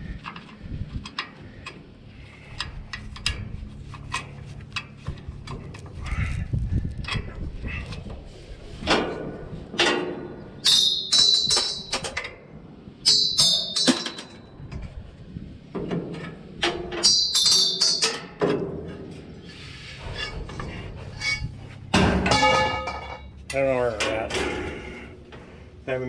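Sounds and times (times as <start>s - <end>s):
metal-on-metal clanks and knocks: 8.8s - 12.4s, 13.0s - 14.5s, 15.8s - 19.3s, 20.0s - 23.3s.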